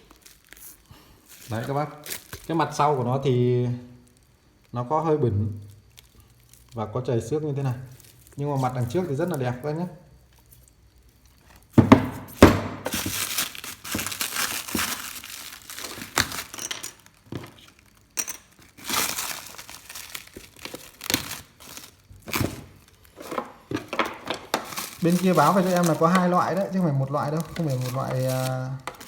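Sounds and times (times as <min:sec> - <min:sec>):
packaging rustling and crinkling: 0:00.0 - 0:04.7, 0:05.6 - 0:06.8, 0:07.8 - 0:29.0.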